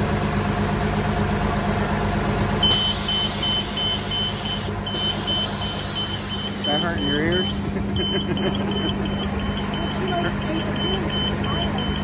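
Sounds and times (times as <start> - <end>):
bus diesel engine idling: 0.0 - 12.0
high electronic warning beeper: 2.6 - 12.0.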